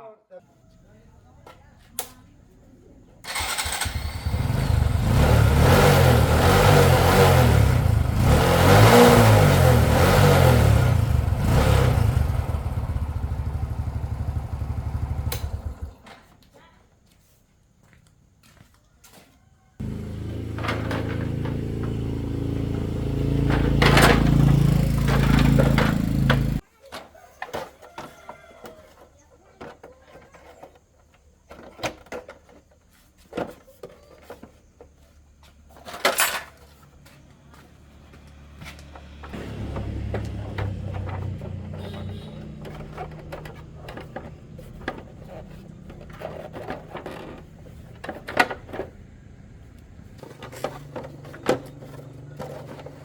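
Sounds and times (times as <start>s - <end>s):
small motorcycle engine running: 3.3s - 16.0s, 19.8s - 26.6s, 37.5s - 53.0s
quiet engine hum: 10.7s - 16.1s, 19.8s - 26.6s, 36.7s - 53.0s.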